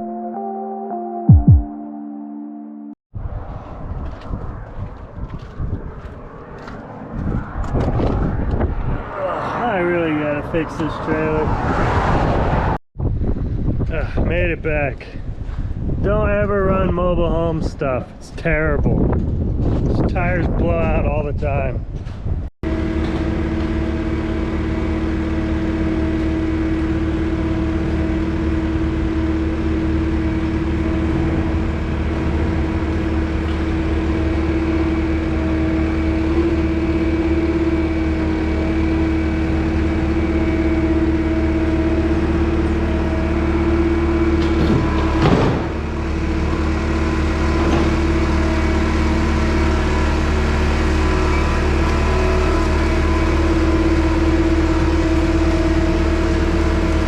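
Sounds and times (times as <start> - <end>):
engine running steadily: 22.7 - 57.0.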